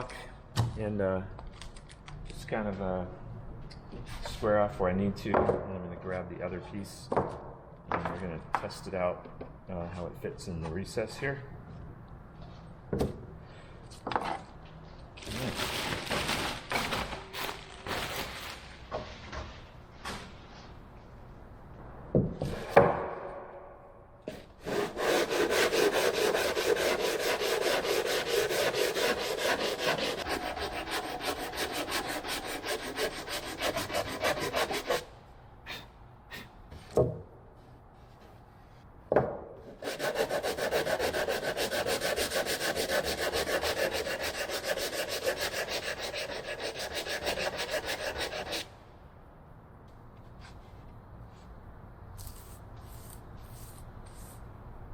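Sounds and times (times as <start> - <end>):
sanding block rubbing plywood: 24.3 - 35.1, 39.8 - 48.7.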